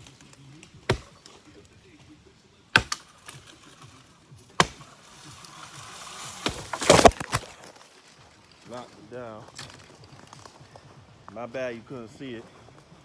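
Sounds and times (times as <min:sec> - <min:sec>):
axe chopping tree trunk: 0:00.0 - 0:01.7, 0:02.7 - 0:07.7
tree falling: 0:00.0 - 0:01.9, 0:02.7 - 0:10.7.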